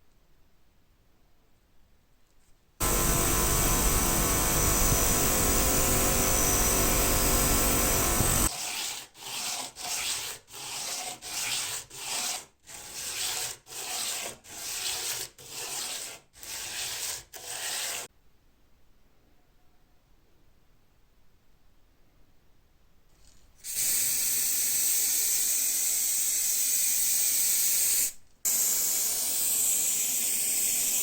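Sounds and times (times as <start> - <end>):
sandpaper rubbing on steel: 4.1 - 18.1.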